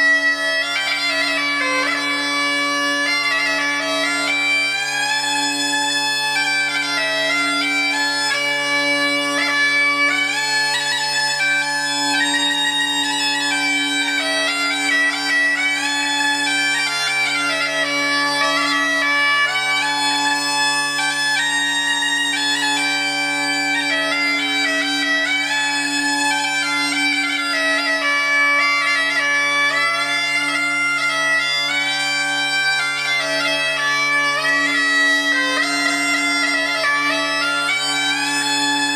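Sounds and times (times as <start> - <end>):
bagpipes playing: 0.0 - 38.9.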